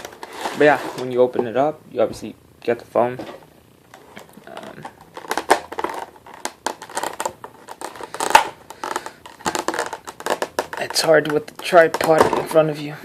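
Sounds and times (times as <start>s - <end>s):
packaging rustling and crinkling: 0.0s - 1.2s, 3.3s - 12.6s.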